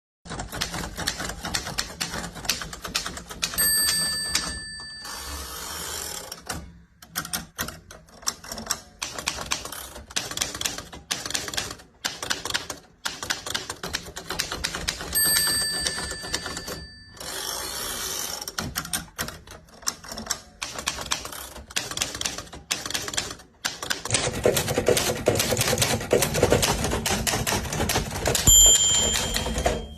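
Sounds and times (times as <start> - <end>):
typewriter typing: 0.3 - 29.9
typewriter bell ringing: 3.5 - 6.2, 15.1 - 18.3, 28.2 - 29.9.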